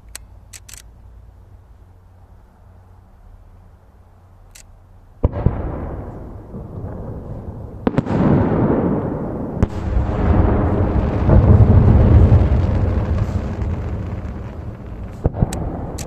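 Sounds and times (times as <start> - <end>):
rolling rumble: 5.2 - 16.0
firework shells bursting: 9.6 - 16.0.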